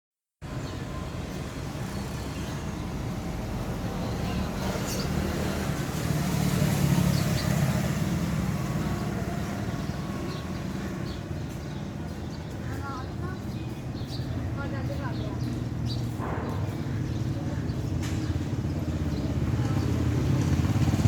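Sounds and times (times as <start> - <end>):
vehicle passing by: 0.9 - 12.2, 15.1 - 21.0.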